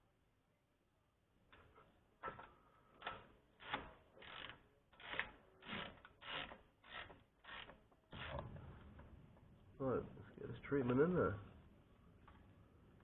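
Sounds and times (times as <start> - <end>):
ratchet clicking: 3.0 - 8.4.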